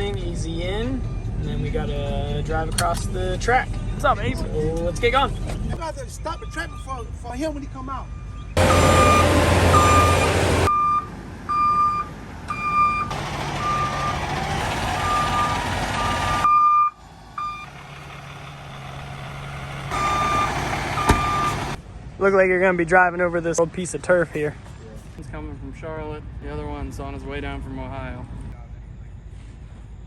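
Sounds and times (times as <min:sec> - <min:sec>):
reversing alarm beeping: 0:06.0 - 0:07.3, 0:08.0 - 0:17.8, 0:19.0 - 0:21.8
heavy vehicle running: 0:08.6 - 0:21.9.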